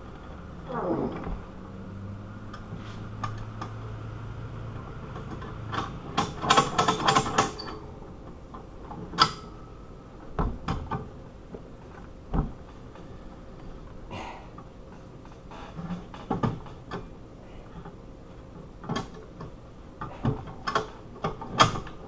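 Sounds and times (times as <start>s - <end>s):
metal clicks and clacks: 5.1s - 7.8s.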